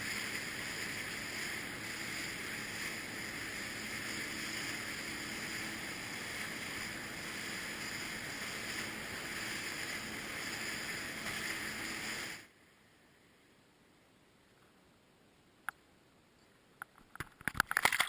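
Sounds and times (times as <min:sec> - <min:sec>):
water and wind rushing: 0:00.0 - 0:12.5
faint engine hum: 0:00.0 - 0:13.4
low hiss: 0:00.0 - 0:16.8.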